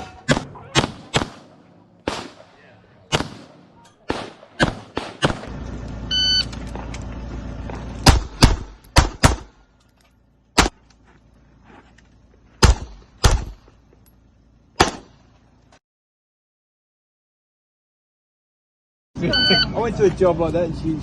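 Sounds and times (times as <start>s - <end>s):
handgun shots: 0.0s - 5.5s, 8.0s - 9.6s, 10.6s - 10.8s, 12.6s - 13.6s, 14.8s - 15.1s
low steady rumble: 0.0s - 15.8s
short high beep: 6.1s - 6.5s, 19.2s - 19.8s.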